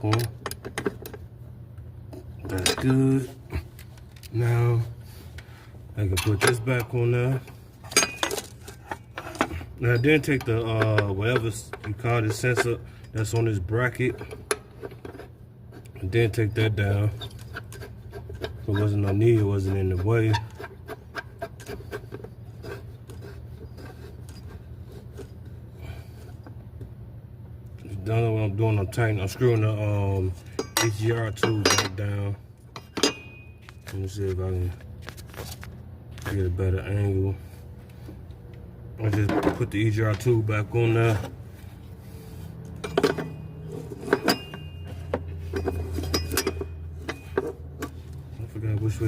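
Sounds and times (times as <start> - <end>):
steady low hum: 0.0 - 49.0
tool clicks and scraping: 6.0 - 26.6, 39.0 - 49.0
hand tools clinking on metal: 7.9 - 14.1, 30.4 - 34.0, 42.7 - 48.0.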